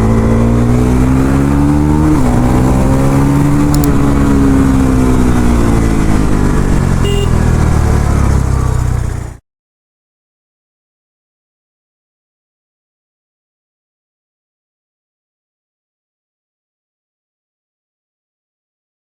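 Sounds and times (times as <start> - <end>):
motorcycle engine revving: 0.0 - 9.4.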